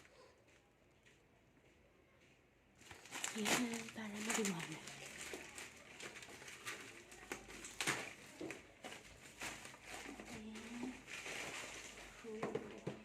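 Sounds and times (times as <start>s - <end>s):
packaging clicks and rustles: 2.8s - 13.0s.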